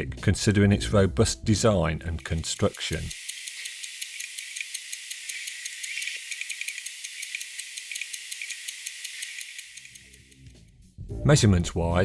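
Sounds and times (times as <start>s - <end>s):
watch ticking: 2.0s - 10.5s.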